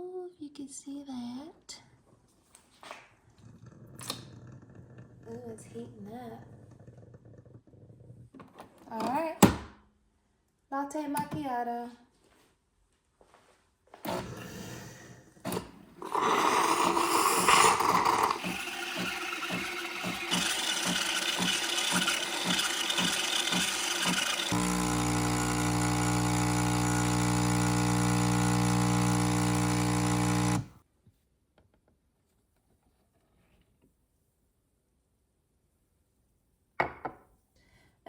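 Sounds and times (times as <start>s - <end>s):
espresso machine running: 16.0s - 30.8s.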